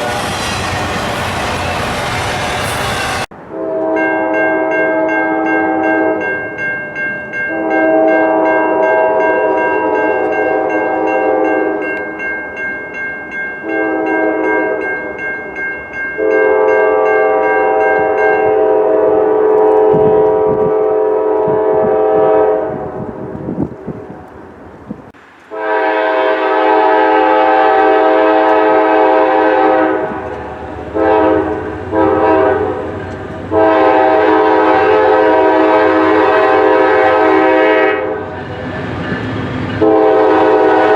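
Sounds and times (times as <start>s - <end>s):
rail wheel clatter: 0.0s - 3.5s, 22.9s - 40.9s
locomotive air horn blasts: 0.0s - 6.2s, 7.5s - 11.8s, 13.6s - 14.8s, 16.2s - 23.0s, 25.5s - 30.3s, 30.9s - 32.9s, 33.5s - 38.2s, 39.8s - 40.9s.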